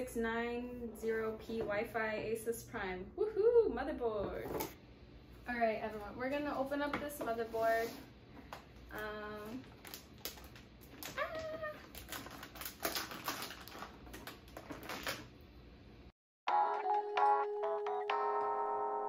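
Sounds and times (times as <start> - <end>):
packaging clicks and rustles: 8.9 - 15.3
background music with held tone: 16.5 - 19.0.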